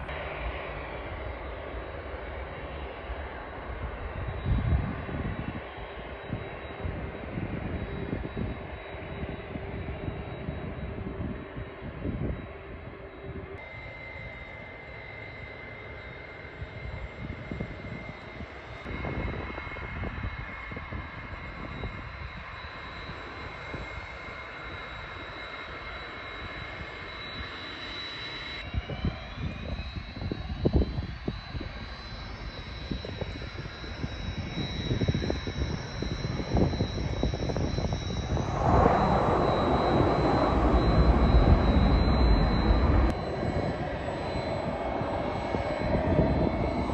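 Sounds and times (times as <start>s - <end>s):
jet engines whining: 0.0s - 46.9s
wind rumbling on microphone: 3.7s - 13.6s, 16.8s - 22.6s, 32.8s - 46.9s
jet noise rushing: 37.1s - 46.9s.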